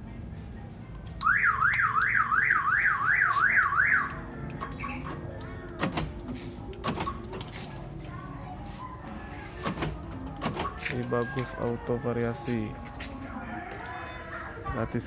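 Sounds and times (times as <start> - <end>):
car alarm siren wailing: 1.2 - 4.2
sharp clicks: 3.6 - 7.4.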